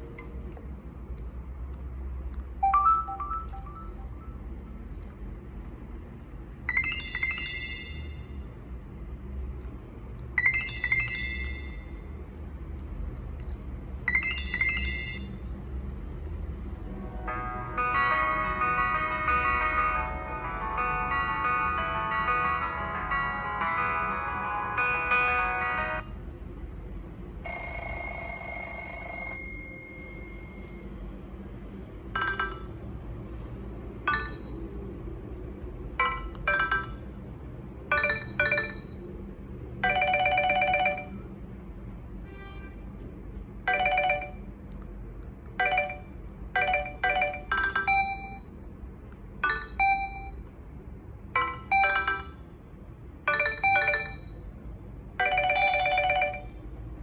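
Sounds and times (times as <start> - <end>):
electronic phone alert tones: 2.6 - 4.4, 45.6 - 48.5, 49.4 - 50.4, 51.4 - 52.4, 53.3 - 54.4, 55.2 - 56.6.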